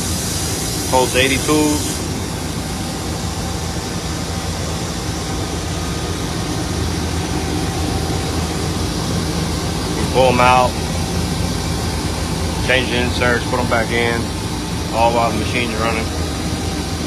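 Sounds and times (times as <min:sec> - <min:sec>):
hiss: 0:00.0 - 0:03.3
shop machinery drone: 0:00.0 - 0:17.0.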